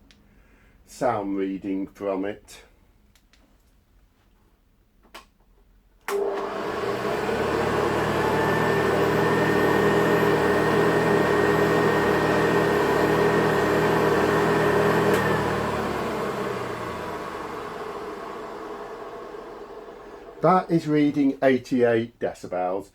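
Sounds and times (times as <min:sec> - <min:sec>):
vacuum cleaner motor whining: 0:06.1 - 0:20.8.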